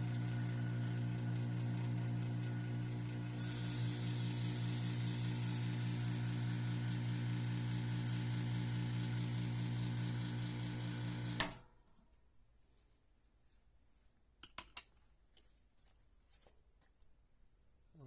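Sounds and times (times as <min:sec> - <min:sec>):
electric motor humming and whining: 0:00.0 - 0:11.5.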